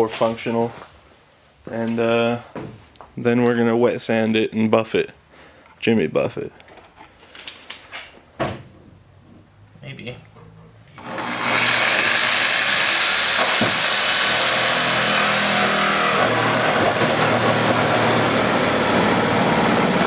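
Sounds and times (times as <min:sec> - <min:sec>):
reciprocating saw cutting: 0:11.0 - 0:20.0.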